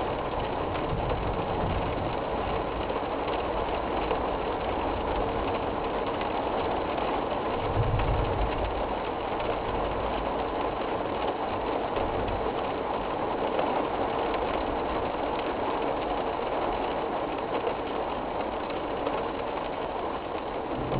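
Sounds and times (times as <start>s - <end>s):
strong wind and rain: 0.0s - 20.9s
wind buffeting rumble: 0.1s - 2.8s, 7.6s - 9.0s, 20.6s - 20.9s.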